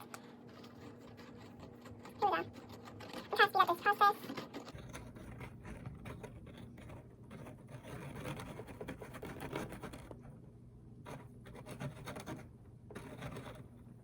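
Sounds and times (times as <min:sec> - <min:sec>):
hands scratching in water bowl: 0:00.0 - 0:10.1.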